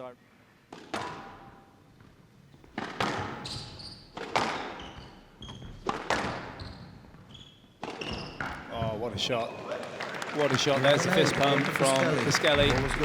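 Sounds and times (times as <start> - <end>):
shoes squeaking on floor: 1.0 - 9.6
squash ball cracks: 2.7 - 3.5, 4.1 - 5.1.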